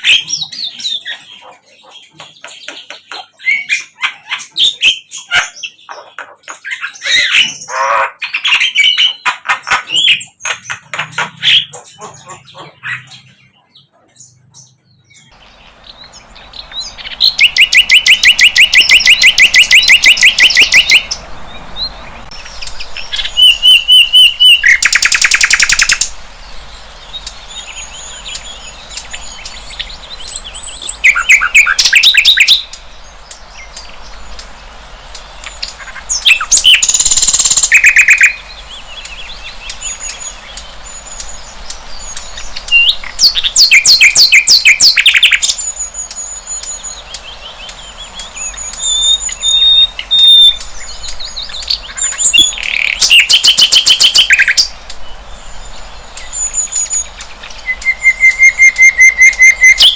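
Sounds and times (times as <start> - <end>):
bird sharp repeated notes: 15.8 - 26.2, 26.8 - 54.8, 56.2 - 59.9.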